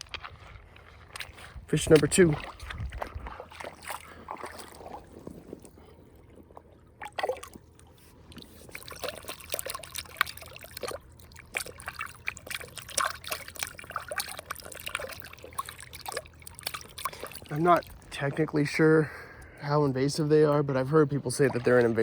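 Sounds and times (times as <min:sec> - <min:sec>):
small water splashes: 0:00.0 - 0:20.2, 0:20.8 - 0:22.0
creek water trickling: 0:00.0 - 0:22.0.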